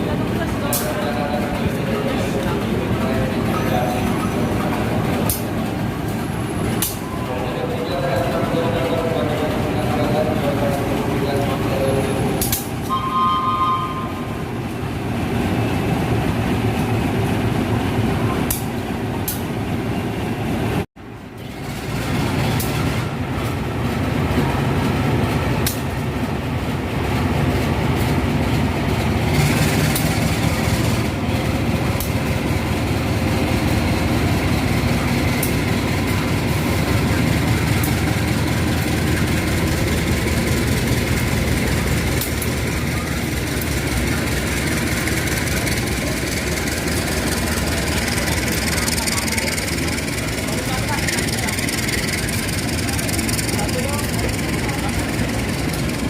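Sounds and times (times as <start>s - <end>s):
train rumbling: 0.0s - 56.0s
wheel-on-rail clicks: 37.6s - 56.0s.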